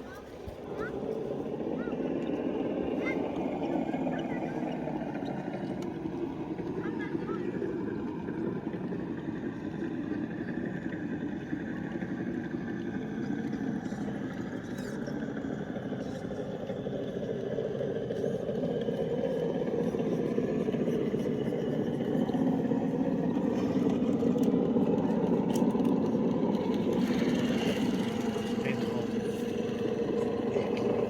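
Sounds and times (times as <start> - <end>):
electric motor whining: 14.2 - 31.0.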